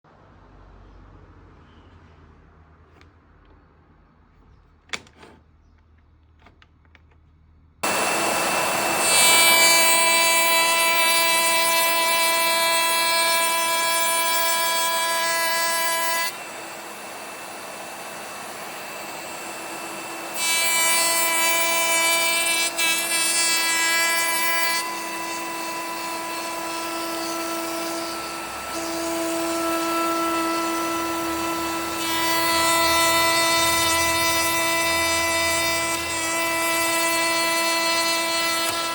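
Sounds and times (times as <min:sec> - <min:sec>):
router whining while cutting: 0:07.8 - 0:38.9.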